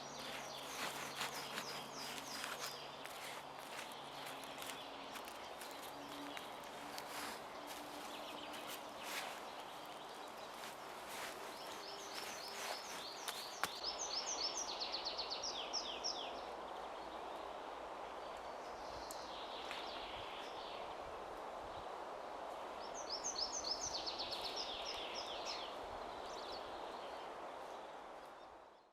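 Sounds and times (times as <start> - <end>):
steady rustling: 0.0 - 13.8
songbird singing: 0.0 - 21.2, 22.6 - 27.4.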